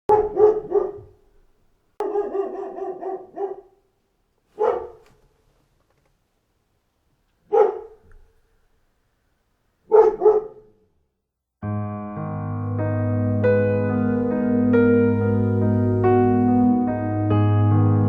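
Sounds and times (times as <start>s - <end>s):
dog barking: 0.1s - 1.2s, 2.0s - 3.9s, 4.5s - 5.2s, 7.4s - 8.3s, 9.8s - 10.9s.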